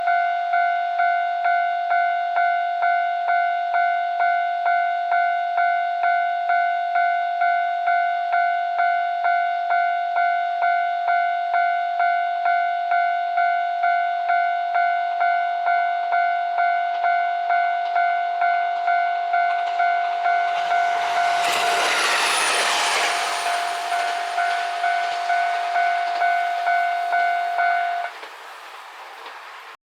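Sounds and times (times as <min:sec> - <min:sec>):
level crossing bell ringing: 0:17.6 - 0:28.1
train rushing past: 0:17.8 - 0:29.8.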